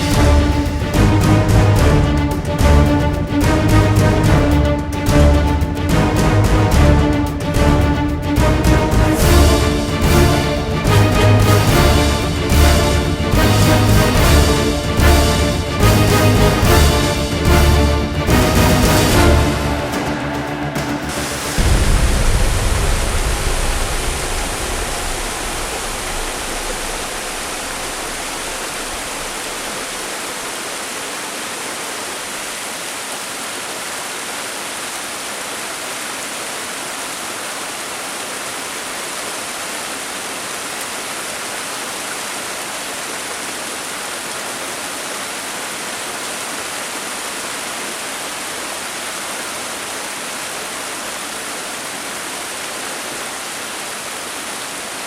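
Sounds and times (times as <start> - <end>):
steady rushing hiss: 0.0 - 55.0
deep low rumble: 20.0 - 29.6.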